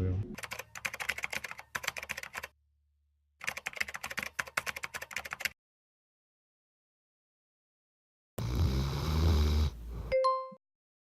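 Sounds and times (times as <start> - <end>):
computer keyboard typing: 0.4 - 2.6, 3.4 - 5.6.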